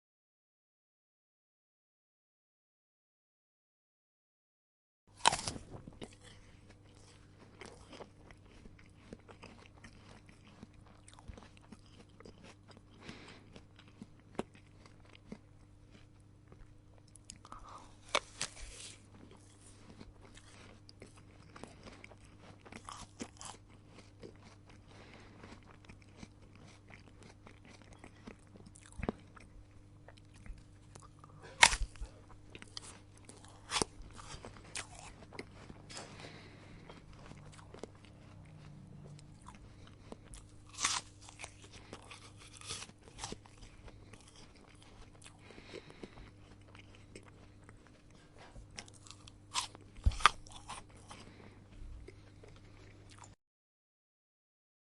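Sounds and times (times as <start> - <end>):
person chewing crisp produce: 5.1 - 53.4
steady low hum: 5.2 - 53.4.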